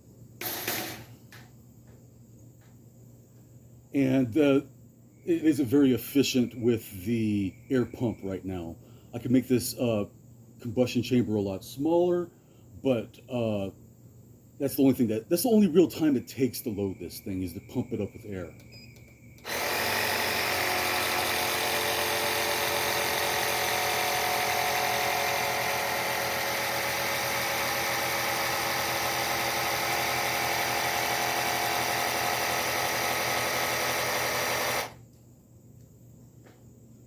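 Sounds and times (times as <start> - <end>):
electric air pump running: 0.4 - 1.1, 19.4 - 35.0.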